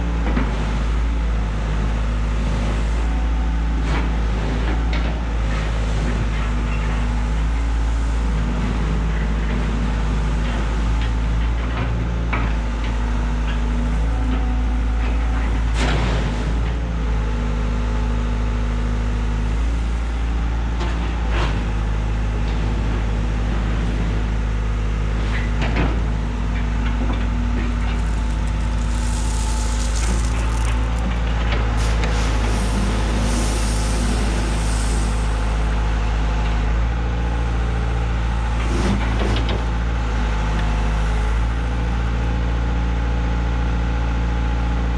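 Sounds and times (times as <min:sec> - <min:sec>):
heavy diesel engine running: 0:20.5 - 0:43.0
stone knocking and scraping: 0:27.8 - 0:31.4.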